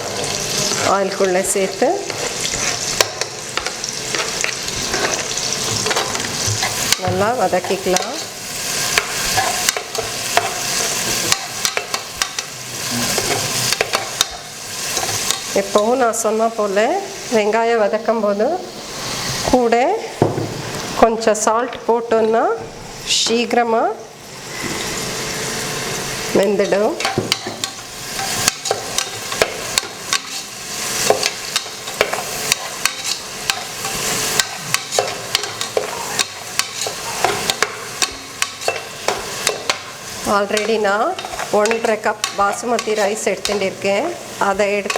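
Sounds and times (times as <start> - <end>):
onions sizzling in hot oil: 0.0 - 44.9
utensil scraping against pot: 0.5 - 15.6, 26.6 - 44.9.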